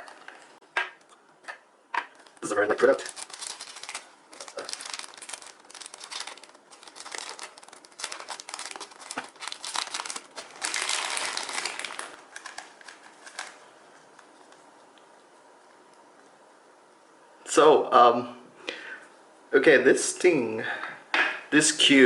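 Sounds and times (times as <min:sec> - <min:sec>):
packaging crinkling and rustling: 0:02.1 - 0:14.6.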